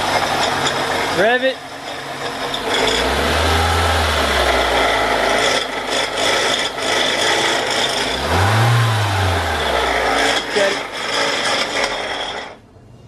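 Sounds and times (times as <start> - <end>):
car engine revving: 2.5 - 11.5.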